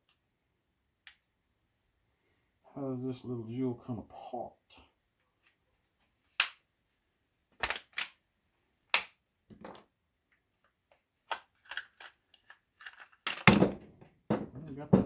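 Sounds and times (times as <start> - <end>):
plastic casing snapping apart: 6.4 - 6.6, 7.6 - 8.2, 8.9 - 9.2, 11.3 - 14.0.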